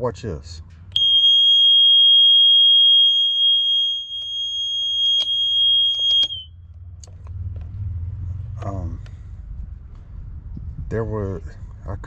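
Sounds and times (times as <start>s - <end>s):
high-pitched alarm tone: 1.0s - 6.5s.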